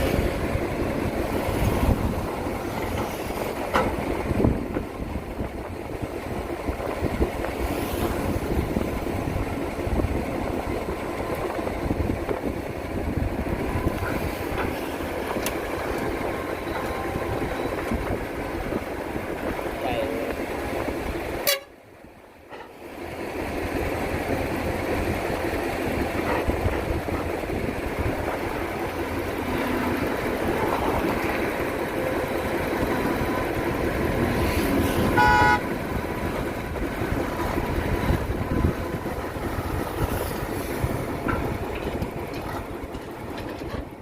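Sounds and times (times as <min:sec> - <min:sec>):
excavator diesel engine rumbling: 0:00.0 - 0:44.0
vehicle horn toot: 0:21.4 - 0:21.7, 0:35.0 - 0:35.7.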